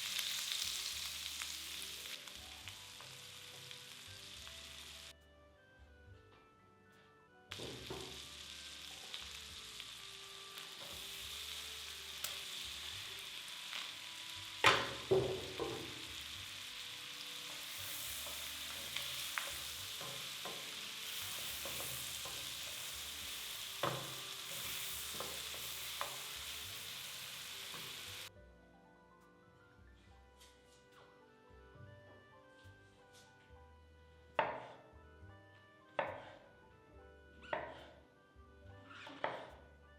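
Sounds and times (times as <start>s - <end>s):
food sizzling in a pan: 0.0s - 5.1s, 7.5s - 28.3s.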